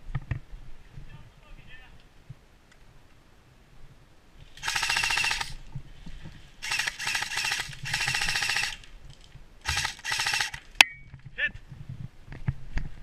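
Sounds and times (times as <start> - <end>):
airsoft gun firing bursts: 4.6 - 5.6, 6.6 - 8.8, 9.6 - 10.7.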